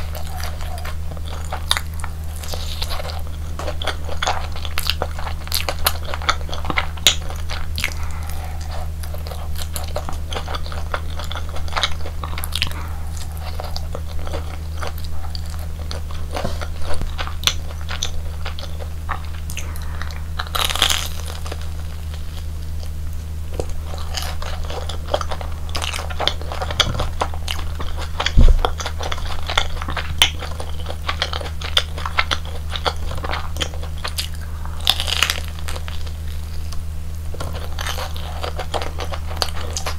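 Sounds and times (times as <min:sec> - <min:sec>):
crunchy biting and chewing: 0:00.0 - 0:39.9
steady low hum: 0:00.0 - 0:39.9
low thump: 0:28.4 - 0:28.7.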